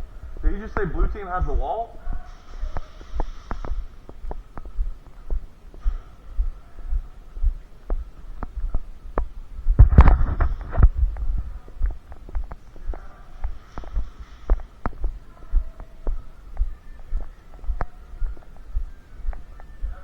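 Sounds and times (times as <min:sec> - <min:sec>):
footsteps thumping: 0:00.0 - 0:20.0
cluster of sharp snaps: 0:02.2 - 0:06.0.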